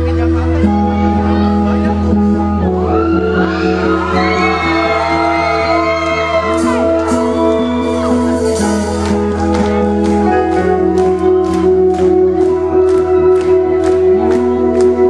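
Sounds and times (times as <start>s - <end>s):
live band playing chords: 0.0s - 15.0s
audience shouting and whooping: 2.8s - 8.6s.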